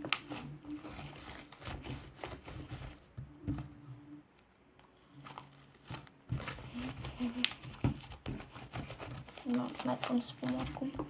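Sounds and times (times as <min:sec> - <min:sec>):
slime squelching and crackling: 0:05.3 - 0:11.0.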